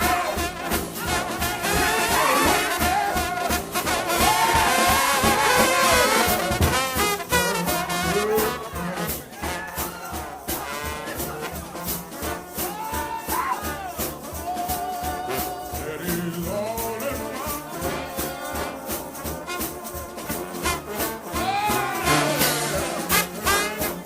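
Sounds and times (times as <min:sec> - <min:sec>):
brass band playing melody: 0:00.0 - 0:24.0
percussion beat: 0:00.0 - 0:24.0
shaken hand percussion: 0:00.0 - 0:24.0.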